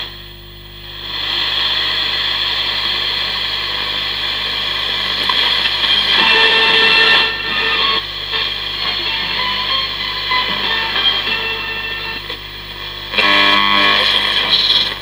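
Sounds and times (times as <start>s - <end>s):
radio static hiss: 0.0s - 15.0s
music from radio: 0.8s - 15.0s.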